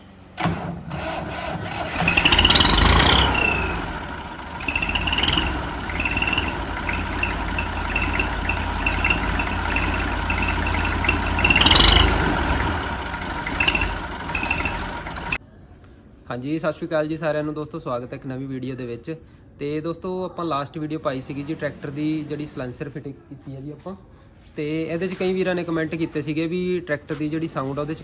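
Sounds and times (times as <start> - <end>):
fan belt squealing and chirping: 1.0 - 15.4
tractor diesel engine running: 1.0 - 15.4.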